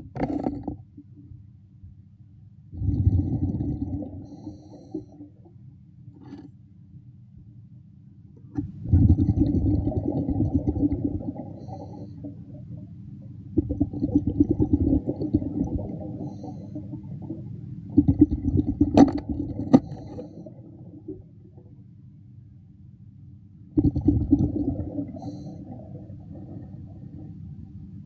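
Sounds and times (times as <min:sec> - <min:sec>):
diver's air bubbling underwater: 0:02.8 - 0:05.2, 0:08.8 - 0:12.8, 0:13.5 - 0:21.3, 0:23.8 - 0:27.4.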